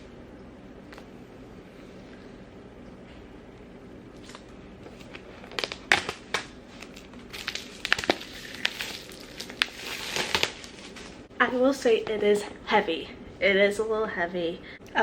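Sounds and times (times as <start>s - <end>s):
packaging crinkling and rustling: 4.1s - 11.3s.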